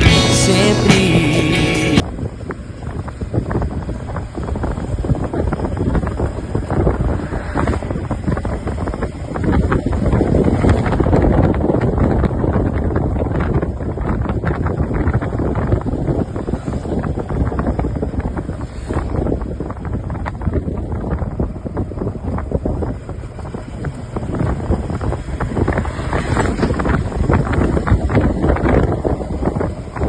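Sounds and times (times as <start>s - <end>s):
wind buffeting microphone: 2.0s - 30.0s.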